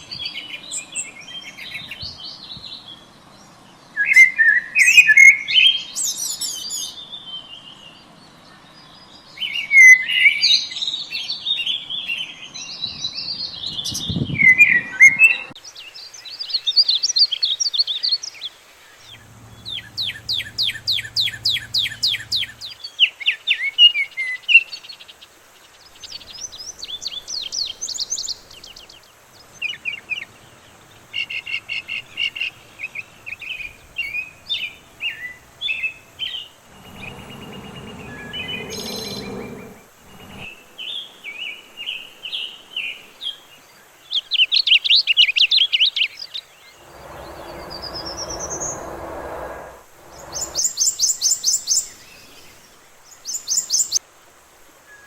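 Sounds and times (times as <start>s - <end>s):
songbirds singing: 0.0s - 54.0s
faint low hum: 19.0s - 22.7s
short low rumble: 19.1s - 22.7s, 46.8s - 50.9s.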